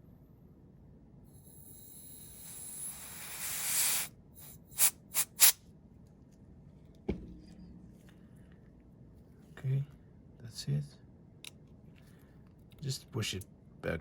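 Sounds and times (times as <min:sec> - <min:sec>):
compressed air hissing: 0:01.3 - 0:05.6
short air puffs: 0:01.4 - 0:05.6.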